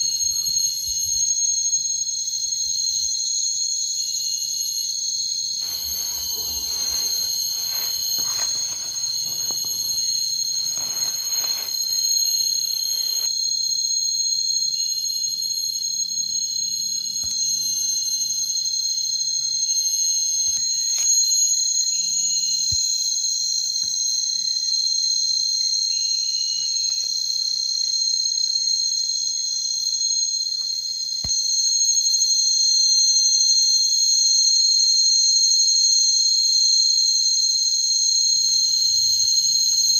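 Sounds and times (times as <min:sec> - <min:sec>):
insects trilling: 0:00.0 - 0:39.9
rustling: 0:05.6 - 0:13.3.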